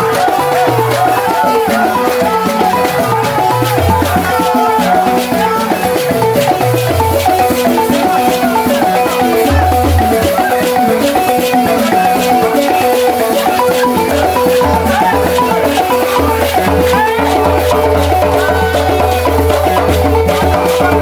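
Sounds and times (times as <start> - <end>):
balafon played fast: 0.0 - 21.0
rattling shaker rhythm: 0.0 - 21.0.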